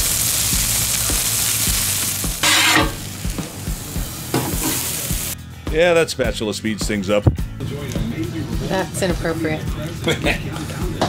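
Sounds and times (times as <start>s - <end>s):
vegetables sizzling on griddle: 0.0s - 5.4s.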